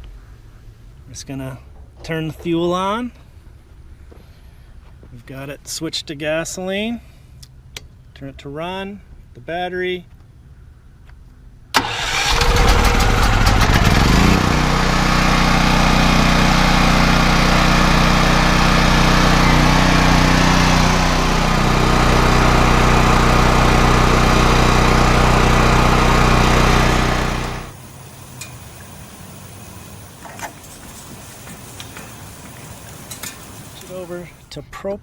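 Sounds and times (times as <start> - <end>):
generator engine running: 11.8 - 34.5.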